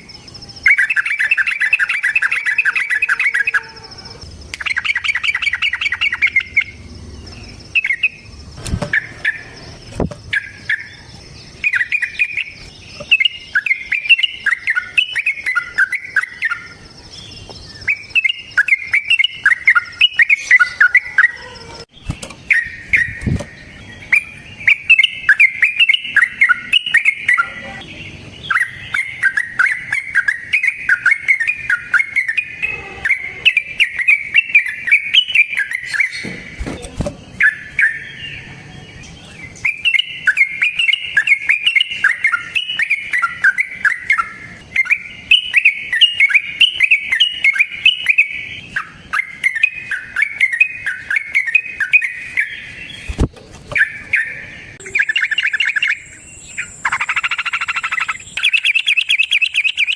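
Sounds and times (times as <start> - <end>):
bulbul singing bubbly song: 0.0 - 16.9.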